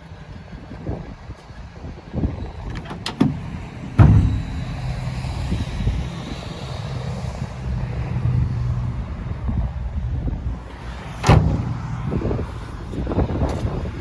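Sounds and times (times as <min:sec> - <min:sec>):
wind buffeting microphone: 0:00.4 - 0:14.0
truck engine idling: 0:02.4 - 0:09.3, 0:10.6 - 0:13.6
sharp thump: 0:02.6 - 0:06.1, 0:11.0 - 0:12.7.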